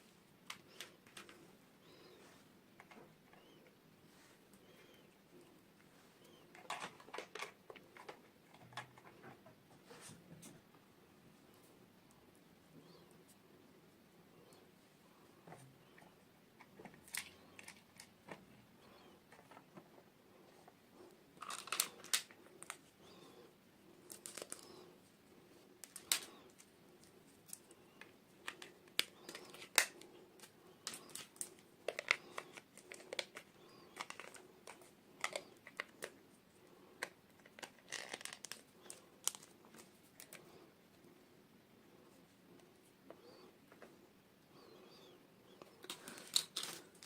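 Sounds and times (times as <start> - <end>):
plastic wrapping crinkling: 21.4 - 22.9, 24.0 - 24.8, 28.4 - 36.1, 37.0 - 40.4, 45.8 - 47.0.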